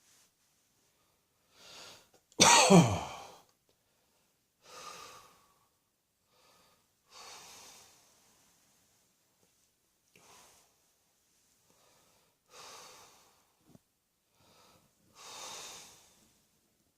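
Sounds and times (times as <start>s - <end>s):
quiet breathing: 0.0s - 2.2s, 3.2s - 16.9s
person coughing: 2.4s - 3.4s.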